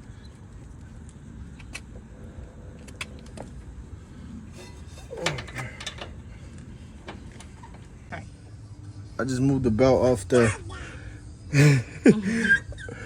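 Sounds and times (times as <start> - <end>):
scraping creak: 4.5 - 7.9
metallic clicks of hand tools: 4.6 - 6.2.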